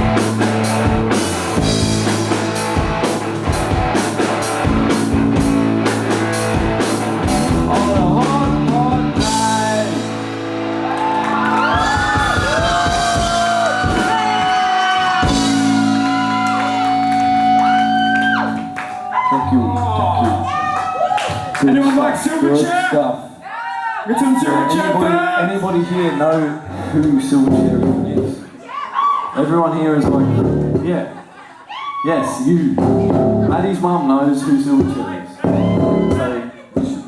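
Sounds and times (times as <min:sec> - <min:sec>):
drum beat: 0:00.0 - 0:10.1, 0:11.2 - 0:21.9, 0:27.4 - 0:28.4, 0:32.8 - 0:33.6, 0:34.8 - 0:37.0
electric guitar: 0:00.0 - 0:21.7
bass guitar: 0:00.0 - 0:21.8, 0:26.7 - 0:28.4, 0:30.0 - 0:31.0, 0:32.6 - 0:33.8, 0:34.8 - 0:36.3
person singing: 0:07.3 - 0:10.1.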